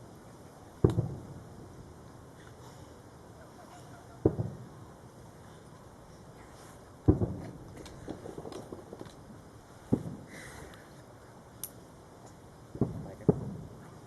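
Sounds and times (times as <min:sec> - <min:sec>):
faint crackling pops: 0:00.8 - 0:01.4, 0:05.7 - 0:14.0
distant firework booms: 0:00.8 - 0:01.9, 0:04.2 - 0:04.9, 0:07.0 - 0:10.5, 0:12.7 - 0:14.0.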